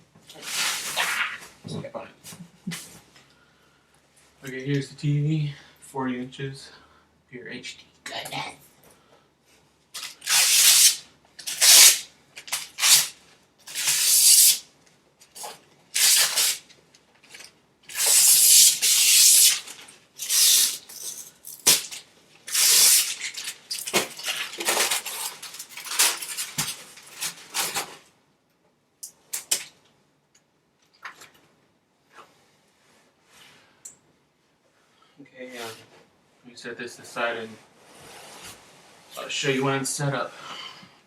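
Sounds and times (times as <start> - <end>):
packaging rustling and crinkling: 15.2 - 28.1.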